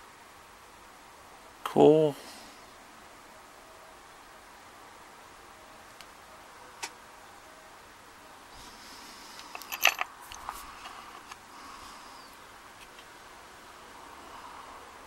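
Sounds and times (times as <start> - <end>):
small metal parts clicking: 9.4 - 11.4.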